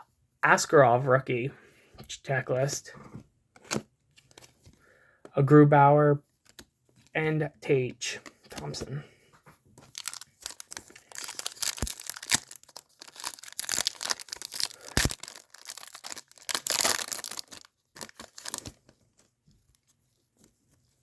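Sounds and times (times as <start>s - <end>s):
wrapper tearing and crinkling: 9.9s - 18.8s.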